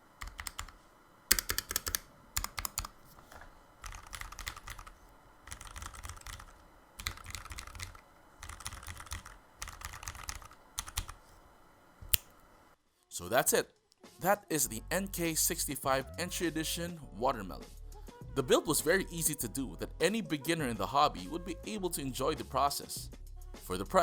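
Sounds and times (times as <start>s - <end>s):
mechanical keyboard typing: 0.2s - 3.0s, 3.8s - 11.2s.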